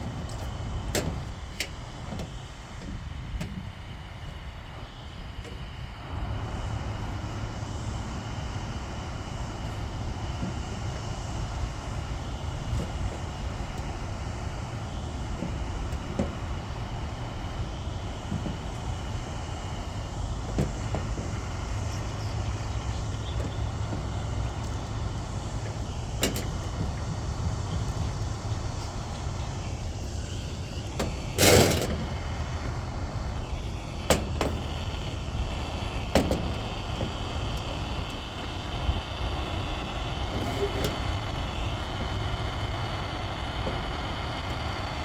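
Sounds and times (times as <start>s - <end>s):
soldering torch hissing: 4.0s - 45.0s
light taps on metal: 15.0s - 33.2s.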